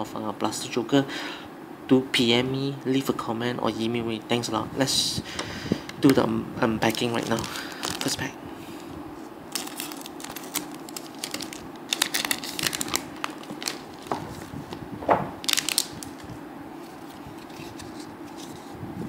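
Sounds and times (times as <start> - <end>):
steady low hum: 0.0 - 19.0
plastic wrapper crinkling and tearing: 6.8 - 8.3, 9.5 - 14.8, 15.4 - 18.7.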